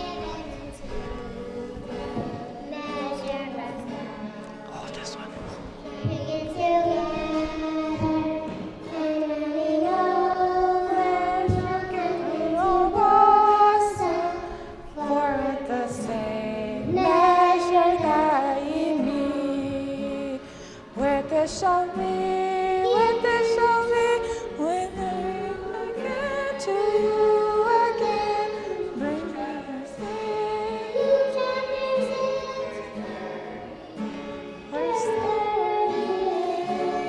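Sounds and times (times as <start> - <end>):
woman singing: 0.0 - 4.4, 6.1 - 33.4, 34.0 - 37.0
children singing: 0.0 - 37.0.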